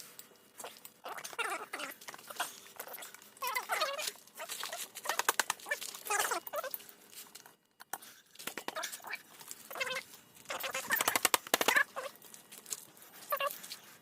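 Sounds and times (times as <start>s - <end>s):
quick clicking and tapping: 10.8s - 11.8s.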